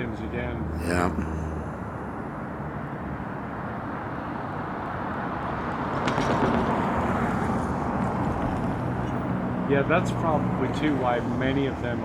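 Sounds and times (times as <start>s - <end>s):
road traffic: 0.0s - 12.0s.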